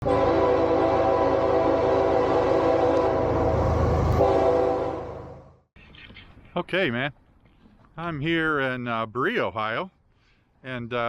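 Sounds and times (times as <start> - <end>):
locomotive air horn blast: 0.0 - 5.6
train rumble: 0.0 - 5.6.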